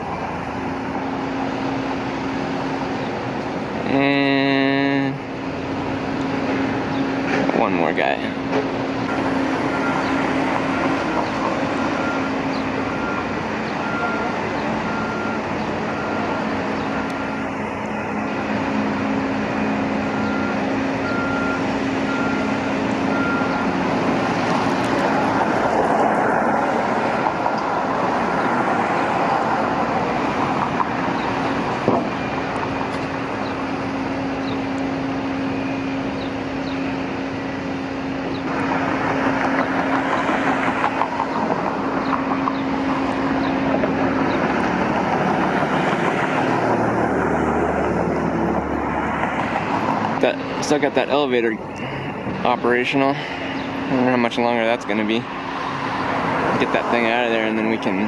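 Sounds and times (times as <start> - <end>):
construction site noise: 0.0 - 58.0
traffic noise: 0.0 - 58.0
vehicle engines running: 0.0 - 58.0
backup alarm beeping: 9.1 - 18.3, 19.6 - 23.8.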